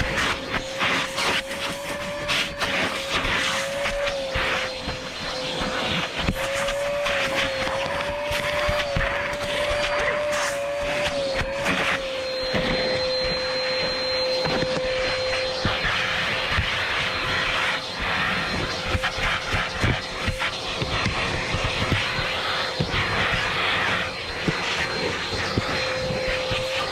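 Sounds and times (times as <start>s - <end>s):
vacuum cleaner running: 0.0s - 26.9s.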